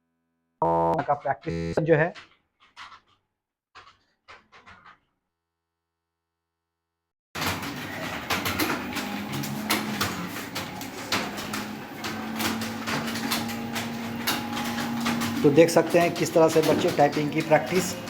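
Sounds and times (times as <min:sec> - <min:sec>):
keyboards clattering: 0:07.4 - 0:18.0.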